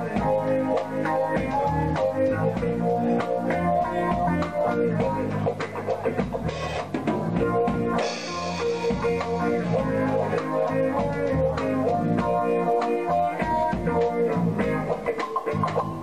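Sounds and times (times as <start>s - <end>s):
reggae band playing: 0.0s - 16.0s.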